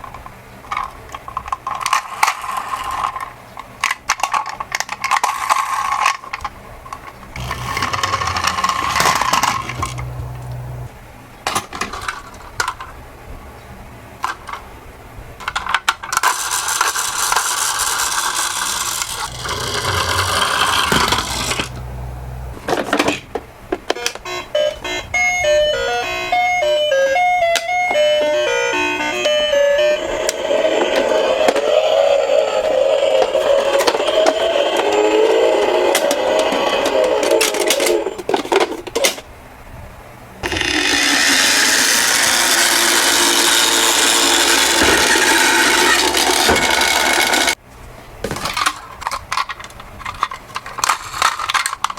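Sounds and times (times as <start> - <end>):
toy cars clattering down plastic slope: 0.0 - 10.0, 15.4 - 21.7, 40.4 - 47.6, 48.3 - 51.9
wavering toy siren: 24.0 - 38.0.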